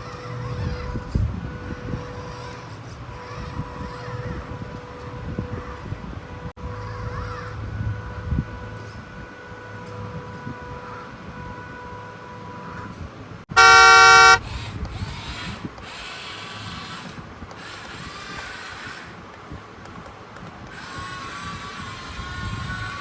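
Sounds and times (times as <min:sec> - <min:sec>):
loud horn honk: 0:13.5 - 0:14.5.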